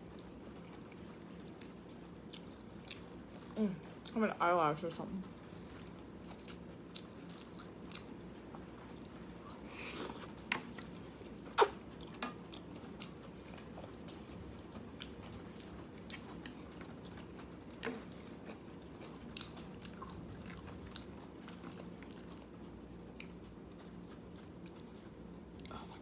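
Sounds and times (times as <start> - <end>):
person chewing noodles: 0.1 - 4.1, 5.7 - 26.0
sharp mouth clicks: 11.6 - 11.8.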